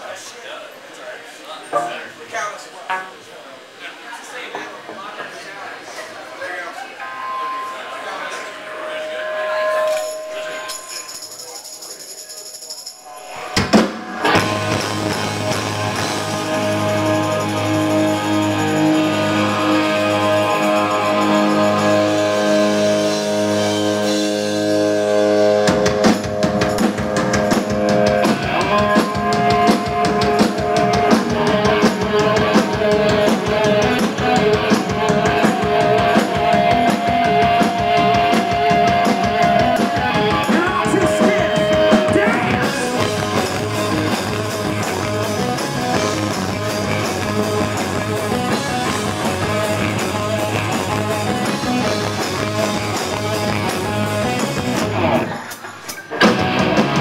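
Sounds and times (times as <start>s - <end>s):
electric guitar chords: 7.1s - 11.1s, 13.1s - 55.5s, 56.1s - 57.0s
rock band playing live: 8.5s - 11.4s, 13.1s - 57.0s.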